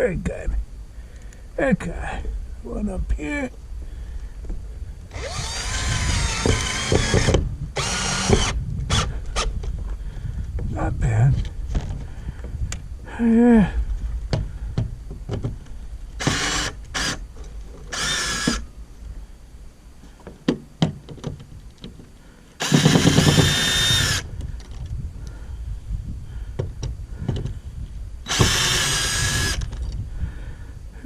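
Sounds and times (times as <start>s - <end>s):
power drill drilling into wood: 5.1s - 9.5s, 16.2s - 17.2s, 17.9s - 18.6s, 22.6s - 24.2s, 28.3s - 29.7s
faint handling clicks and knocks: 20.0s - 22.3s.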